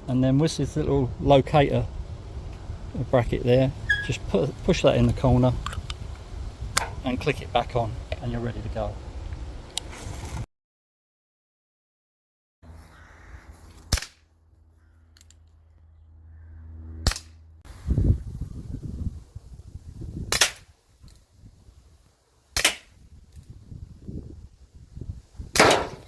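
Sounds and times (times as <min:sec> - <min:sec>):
pellet revolver shots: 0:22.6 - 0:22.9, 0:25.6 - 0:26.0.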